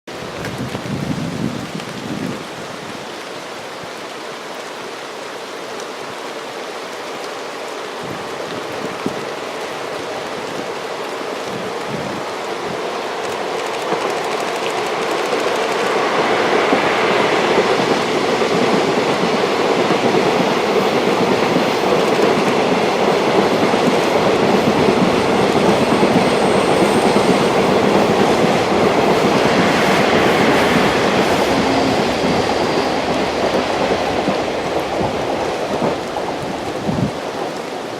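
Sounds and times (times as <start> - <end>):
diesel locomotives passing: 9.2 - 37.9.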